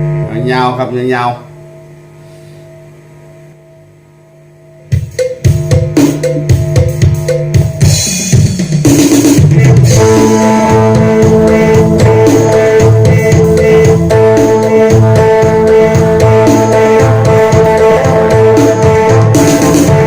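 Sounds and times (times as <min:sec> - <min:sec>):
drum kit kick and snare hits: 0:04.9 - 0:20.0
band playing: 0:05.0 - 0:20.0.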